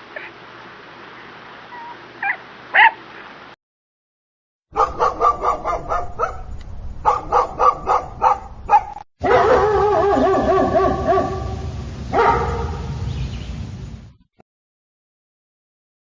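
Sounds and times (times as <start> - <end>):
dog yipping: 1.7 - 3.0, 4.8 - 6.5, 7.1 - 11.4, 12.2 - 12.8.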